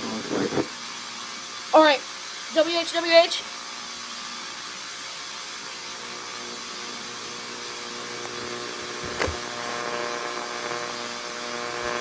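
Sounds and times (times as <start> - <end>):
radio hiss: 0.0 - 0.8, 7.2 - 12.0
electrical hum: 0.0 - 12.0.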